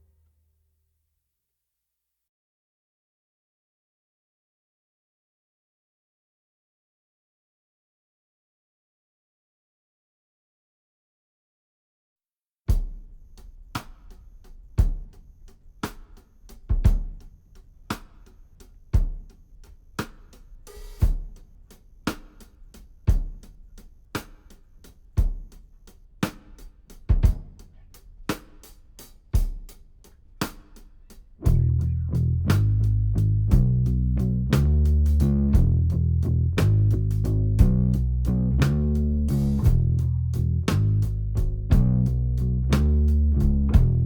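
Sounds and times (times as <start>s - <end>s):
drum kit beat: 12.7s - 44.0s
bass and guitar: 31.5s - 44.0s.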